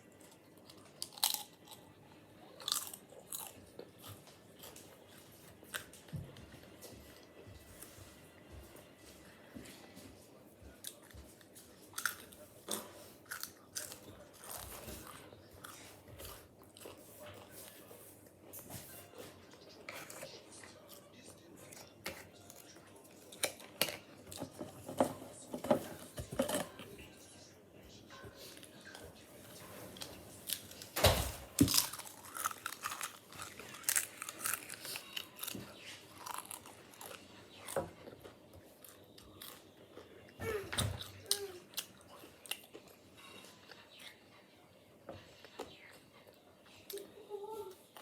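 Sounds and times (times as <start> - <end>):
person chewing crisps: 0.1 - 6.1, 10.8 - 17.5, 31.6 - 40.3
potato crisps crunching: 0.6 - 1.9, 2.6 - 4.9, 31.6 - 37.8.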